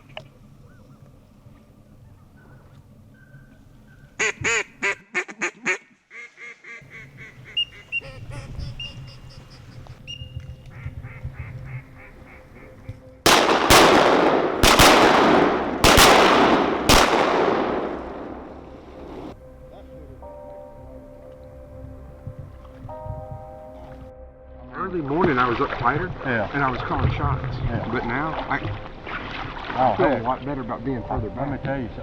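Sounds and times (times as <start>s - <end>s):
duck quacking: 4.2s - 9.1s, 10.7s - 12.8s
shotgun shots: 13.3s - 19.3s.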